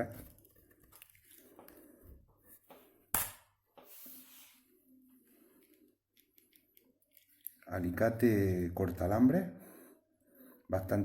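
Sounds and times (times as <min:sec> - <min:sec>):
knife handling rustle: 0:00.2 - 0:02.8.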